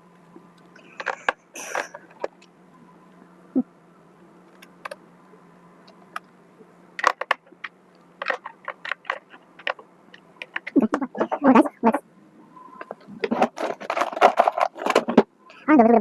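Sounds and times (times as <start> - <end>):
faint steady hum: 0.0 - 16.0
clicks of small plastic parts: 0.6 - 2.5, 7.0 - 10.8.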